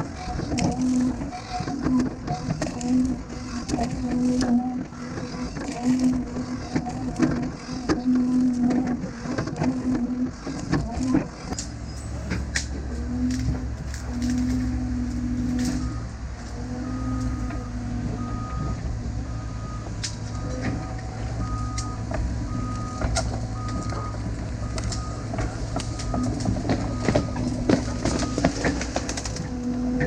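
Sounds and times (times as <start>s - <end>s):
diesel engine running: 0.0s - 30.0s
backup alarm beeping: 14.3s - 30.0s.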